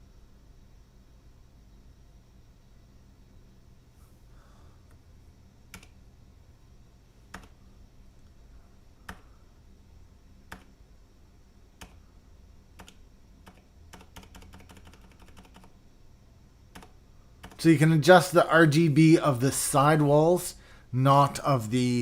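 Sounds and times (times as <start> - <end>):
keyboard keypresses: 12.8 - 15.7.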